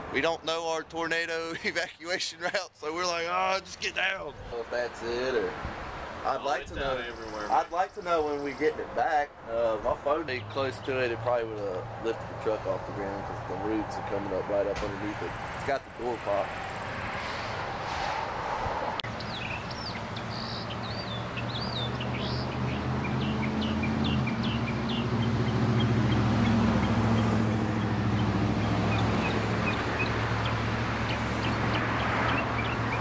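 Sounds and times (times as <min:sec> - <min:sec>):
birds chirping: 0:00.0 - 0:17.6, 0:19.0 - 0:33.0
low engine drone: 0:09.8 - 0:15.3.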